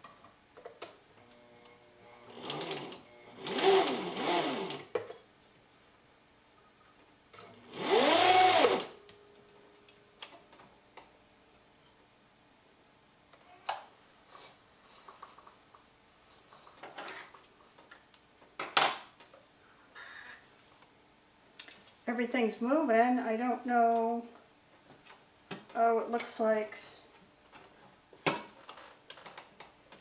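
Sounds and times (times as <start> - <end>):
sewing machine motor: 1.2 - 4.9, 7.6 - 9.0.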